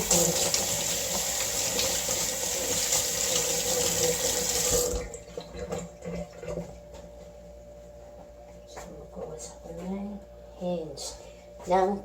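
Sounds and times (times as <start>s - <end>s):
tap running into sink: 0.0s - 5.9s.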